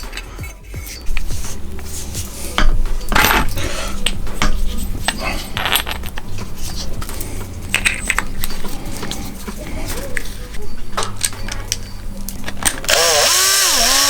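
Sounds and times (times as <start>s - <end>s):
steady low hum: 0.0s - 14.0s
small metal parts clinking: 2.6s - 10.4s.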